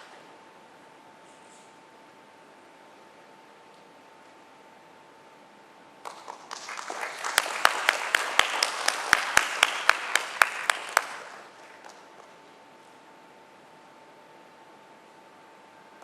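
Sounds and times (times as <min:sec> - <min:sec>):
audience applauding: 0:06.0 - 0:12.3
sharp evenly spaced claps: 0:06.0 - 0:12.4.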